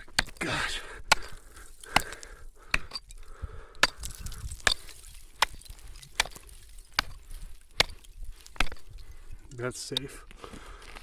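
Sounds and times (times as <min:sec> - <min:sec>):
hatchet chopping ice: 0:00.0 - 0:03.2, 0:03.8 - 0:09.1.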